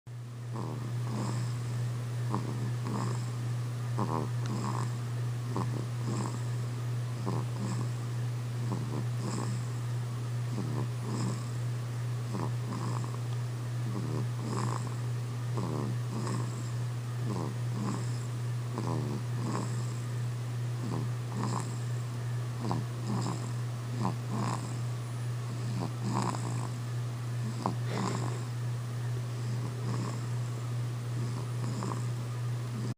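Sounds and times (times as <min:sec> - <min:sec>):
steady low hum: 0:00.1 - 0:32.9
pet snoring: 0:00.5 - 0:06.6, 0:07.2 - 0:08.0, 0:08.6 - 0:09.8, 0:10.4 - 0:11.6, 0:12.2 - 0:20.1, 0:20.8 - 0:22.0, 0:22.6 - 0:26.8, 0:27.4 - 0:28.6, 0:29.3 - 0:30.4, 0:31.1 - 0:32.9.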